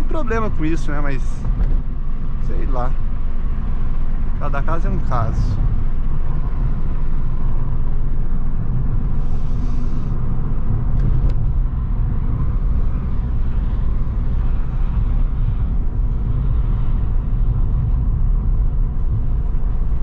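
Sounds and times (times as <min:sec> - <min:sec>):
engine and road rumble: 0:00.0 - 0:20.0.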